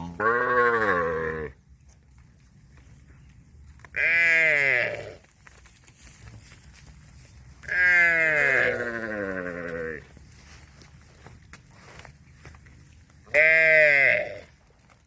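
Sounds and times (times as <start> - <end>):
calf mooing: 0.0 - 1.5, 7.7 - 10.0, 13.3 - 14.4.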